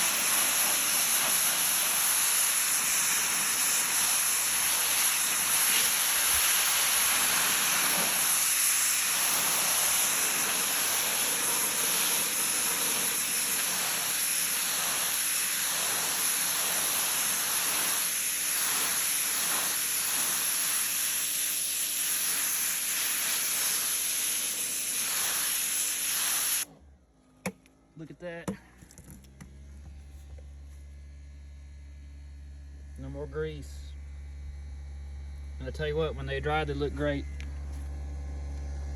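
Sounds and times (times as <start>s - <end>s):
pressure washer spray hissing: 0.0s - 26.7s.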